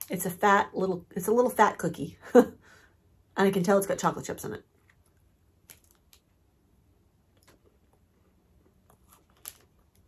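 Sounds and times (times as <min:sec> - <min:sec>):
chewing crunchy cookie: 0:07.3 - 0:10.0.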